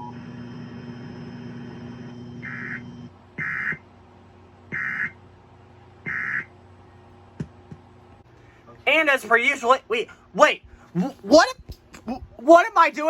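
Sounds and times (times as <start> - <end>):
radio static and hum: 2.3 - 3.8.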